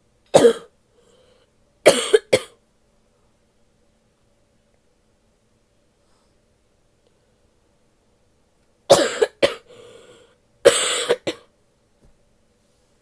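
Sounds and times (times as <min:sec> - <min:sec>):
woman coughing: 0:00.3 - 0:00.7, 0:01.9 - 0:02.6, 0:08.9 - 0:09.7, 0:10.6 - 0:11.5
faint breath: 0:00.9 - 0:01.6, 0:06.0 - 0:06.5, 0:09.7 - 0:10.4.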